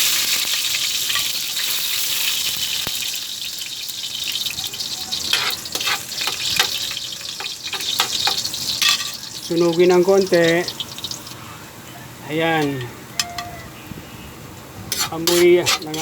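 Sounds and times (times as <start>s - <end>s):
garlic sizzling in hot oil: 0.0s - 11.4s, 14.9s - 16.0s.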